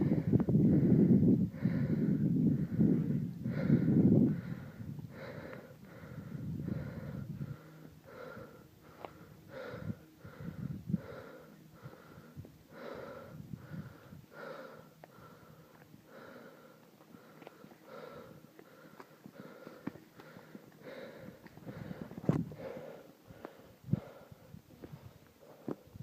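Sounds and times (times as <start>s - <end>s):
low rumble on microphone: 0.0s - 15.4s
person breathing hard: 0.0s - 26.0s.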